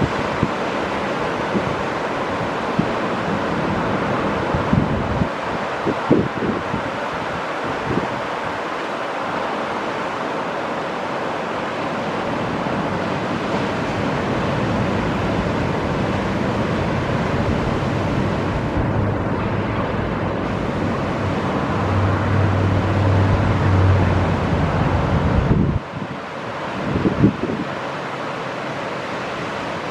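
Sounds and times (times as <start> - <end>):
surf breaking on beach: 0.0 - 29.9
wind buffeting microphone: 1.3 - 8.6, 12.9 - 27.8
low rumble: 18.2 - 25.8.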